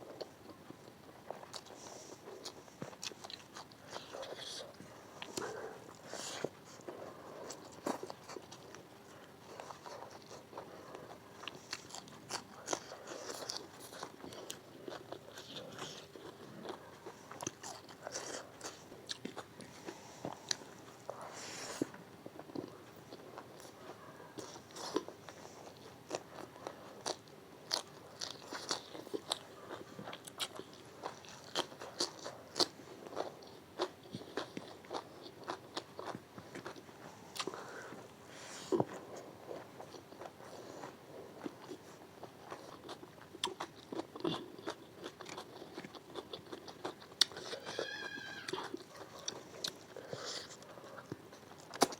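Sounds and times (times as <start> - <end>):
person chewing crunchy food: 0.0 - 51.9.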